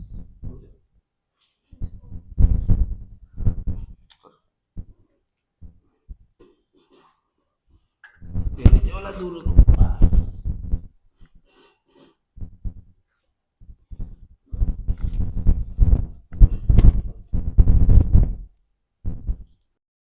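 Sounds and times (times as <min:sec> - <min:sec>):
muffled thumping and rubbing: 0:01.7 - 0:04.0, 0:08.2 - 0:11.0, 0:12.4 - 0:12.9, 0:13.6 - 0:18.5, 0:19.1 - 0:19.6.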